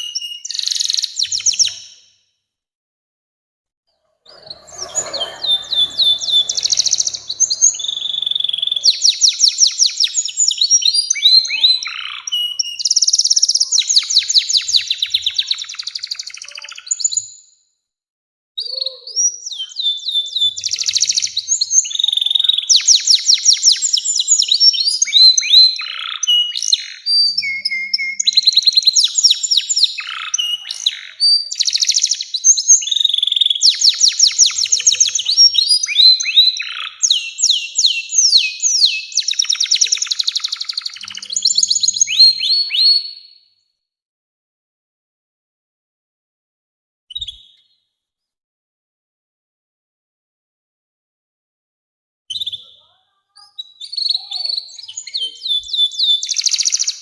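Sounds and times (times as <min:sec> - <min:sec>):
canary singing trills: 0:04.0 - 0:17.3, 0:18.6 - 0:43.4.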